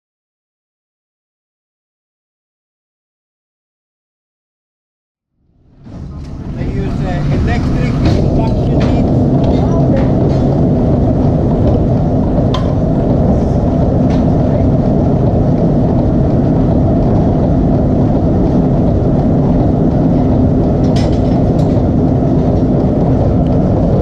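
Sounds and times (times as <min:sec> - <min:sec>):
machinery drone with hum: 0:05.4 - 0:24.0.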